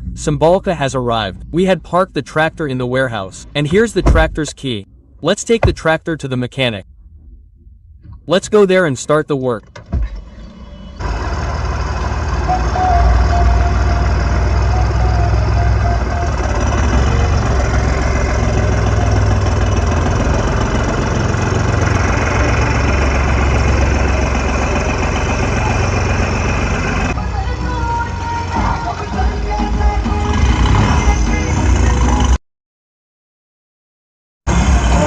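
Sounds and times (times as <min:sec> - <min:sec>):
tractor diesel engine running: 0:09.6 - 0:32.4, 0:34.5 - 0:35.0.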